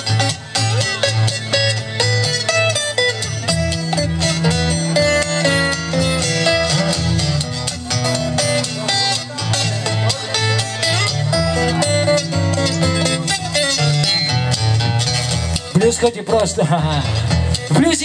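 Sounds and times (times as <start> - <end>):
guitars picking quick notes: 0.0 - 18.0
low sustained bass notes: 3.4 - 10.1, 10.8 - 15.7.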